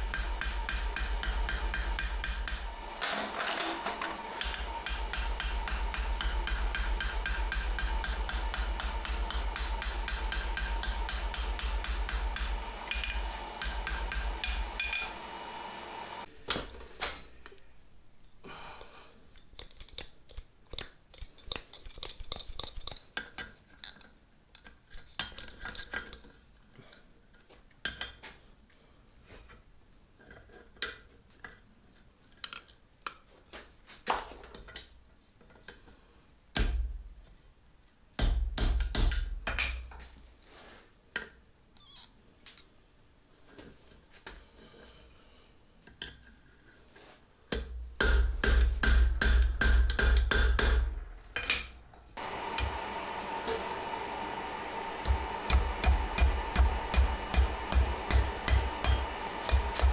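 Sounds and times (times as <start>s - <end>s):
low steady hum: 50.2s - 59.9s
hammer blows on steel: 52.2s - 59.9s.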